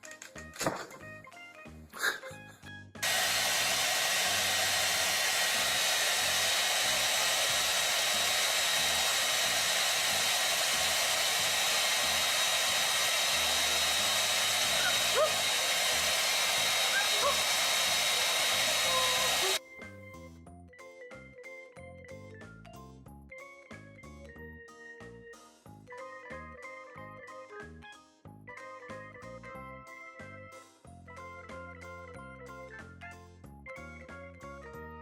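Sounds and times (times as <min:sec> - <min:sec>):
hair dryer blowing: 0:03.0 - 0:19.6.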